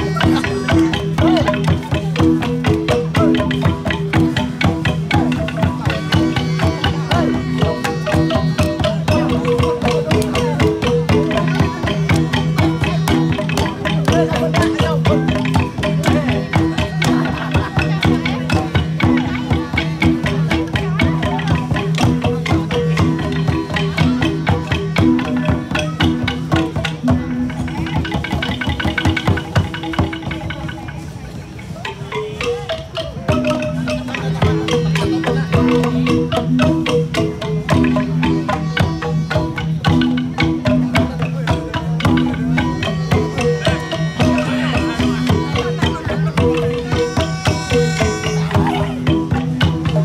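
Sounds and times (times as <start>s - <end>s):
drum: 0.0s - 50.0s
gong ensemble playing: 33.1s - 50.0s.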